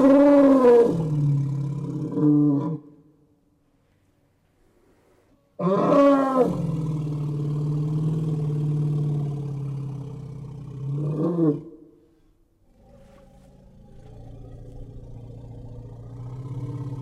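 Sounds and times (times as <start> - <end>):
elephant low rumbling call: 12.7 - 17.0.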